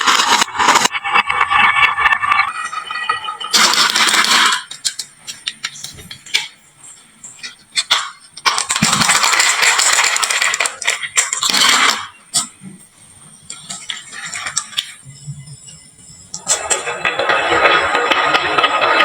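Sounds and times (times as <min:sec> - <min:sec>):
marbles rolling down a track: 0:00.0 - 0:05.0, 0:08.0 - 0:12.1, 0:16.4 - 0:19.0
marbles clacking on track: 0:00.0 - 0:05.7, 0:07.8 - 0:12.2, 0:16.4 - 0:19.0.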